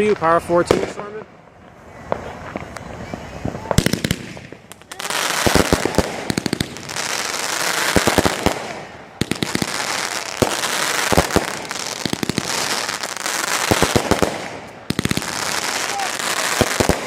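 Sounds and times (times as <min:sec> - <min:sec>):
fireworks crackling: 0:00.0 - 0:17.0
fireworks reports: 0:00.0 - 0:17.0.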